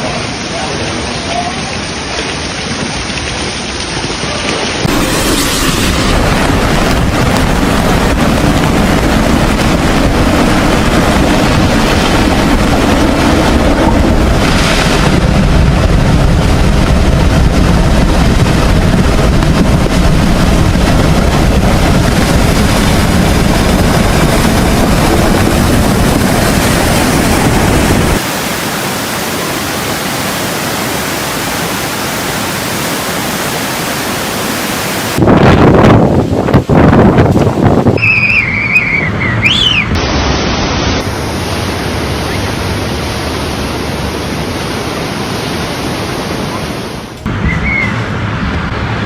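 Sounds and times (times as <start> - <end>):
strong wind on microphone: 4.8 - 28.3, 34.8 - 49.0.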